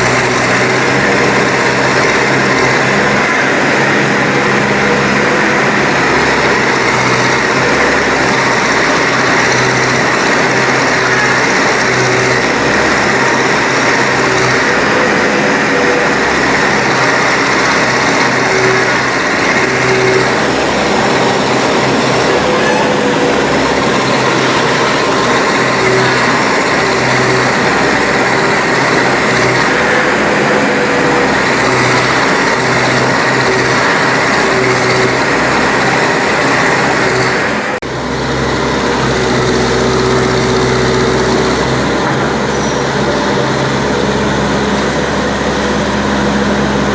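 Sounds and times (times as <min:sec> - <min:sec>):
diesel engine running under load: 0:00.0 - 0:46.9.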